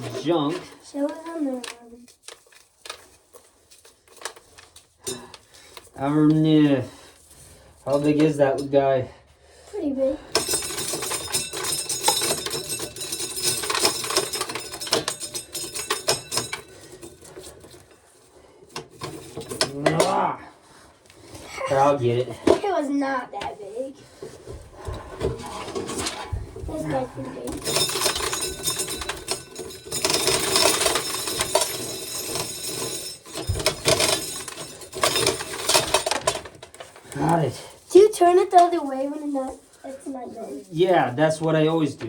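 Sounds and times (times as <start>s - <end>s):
hand-cranked corn sheller clattering: 0.0s - 8.6s, 10.3s - 20.3s, 26.8s - 41.8s
kernels rattling: 0.0s - 8.7s, 10.2s - 20.3s, 24.1s - 41.9s.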